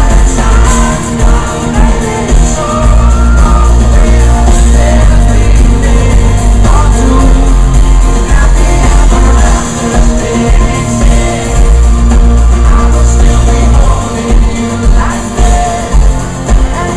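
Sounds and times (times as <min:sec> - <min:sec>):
man singing: 0:00.0 - 0:16.9
pop-rock band playing: 0:00.0 - 0:16.9.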